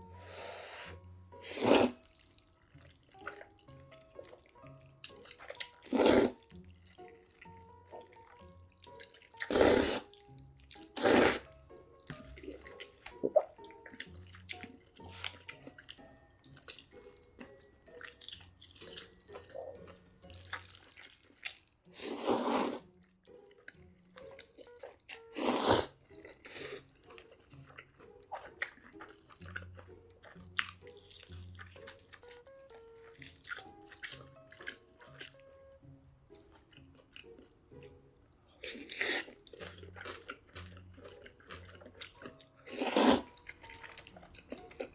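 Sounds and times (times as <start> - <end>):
faint background music: 0.0 - 44.9
loud slurps: 1.4 - 2.0, 5.9 - 6.4, 9.4 - 10.1, 11.0 - 11.5, 22.0 - 22.8, 25.4 - 25.9, 42.7 - 43.3.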